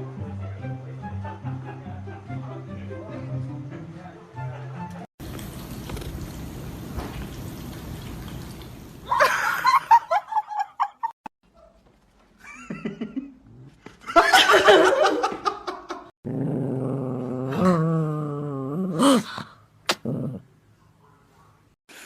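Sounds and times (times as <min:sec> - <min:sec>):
people laughing: 0:12.4 - 0:13.4, 0:14.0 - 0:16.1.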